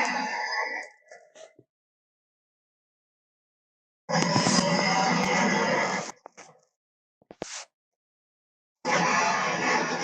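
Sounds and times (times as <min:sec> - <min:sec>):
dinosaur roar sound effect: 0:04.1 - 0:06.2, 0:08.8 - 0:10.0.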